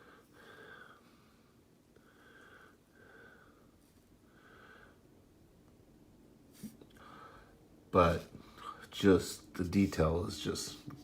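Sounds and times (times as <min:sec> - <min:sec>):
faint breaths: 0:00.0 - 0:05.2, 0:06.5 - 0:09.0.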